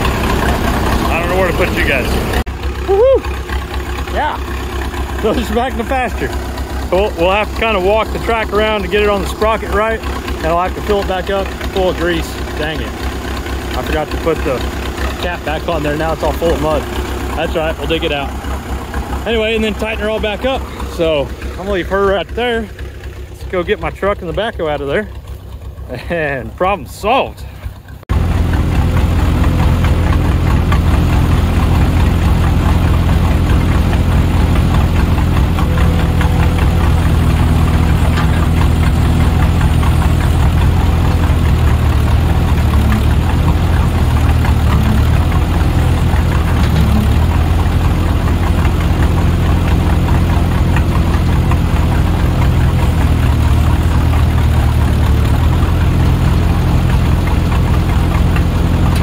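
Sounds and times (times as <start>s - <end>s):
vehicle engine running steadily: 0.0s - 59.0s.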